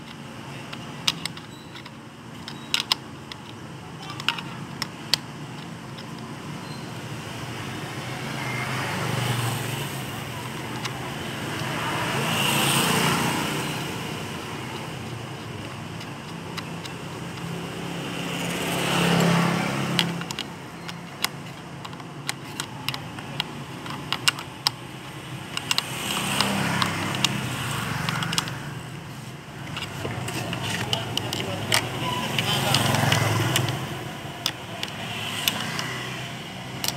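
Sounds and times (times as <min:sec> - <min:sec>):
metallic clicks and taps of tools: 0:00.0 - 0:06.8, 0:10.4 - 0:12.1, 0:12.8 - 0:36.9
vehicles passing by: 0:00.0 - 0:36.9.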